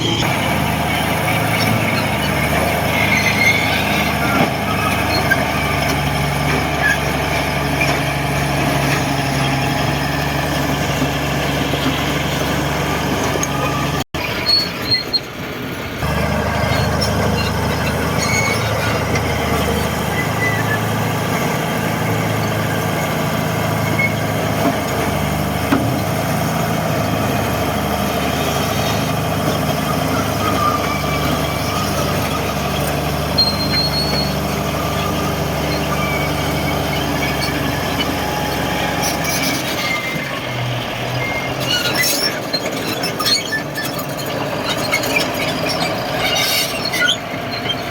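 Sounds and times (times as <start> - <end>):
bulldozer diesel engine running: 0.0 - 47.9
short high squeaks: 1.3 - 9.7, 16.7 - 20.9, 29.6 - 47.9.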